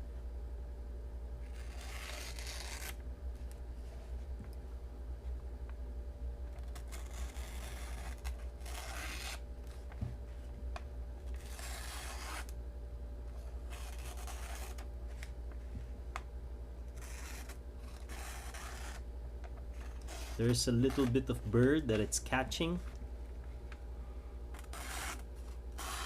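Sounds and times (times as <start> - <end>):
knife slicing through paper: 1.4 - 3.0, 6.6 - 9.4, 11.4 - 12.5, 13.7 - 14.8, 17.0 - 19.0, 24.6 - 26.0.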